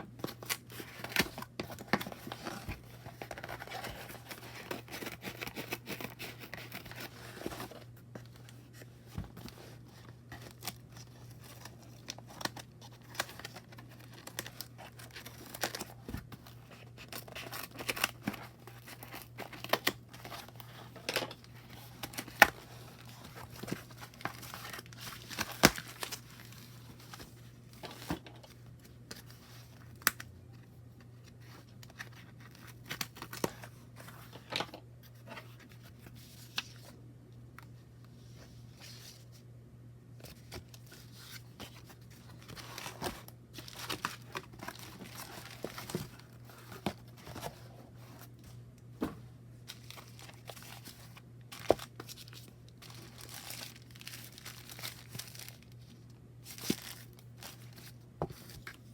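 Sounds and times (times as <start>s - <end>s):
packaging tearing and crinkling: 16.6s - 20.6s, 21.8s - 27.2s, 42.3s - 47.1s, 49.7s - 55.9s, 56.5s - 58.0s.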